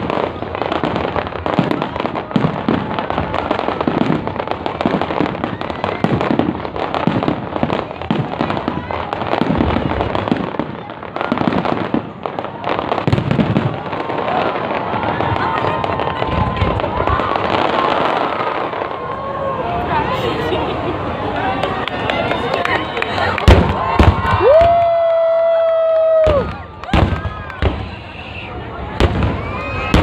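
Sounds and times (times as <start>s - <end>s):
fireworks bangs and crackles: 0.0s - 30.0s.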